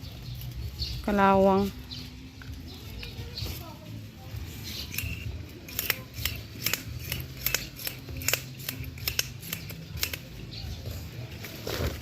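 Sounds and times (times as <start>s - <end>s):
sharp metallic clicks and snips: 4.6s - 10.7s.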